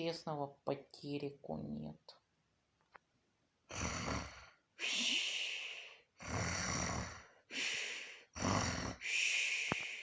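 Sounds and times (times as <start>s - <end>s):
man snoring: 3.7s - 4.6s, 6.2s - 7.3s, 8.4s - 9.0s.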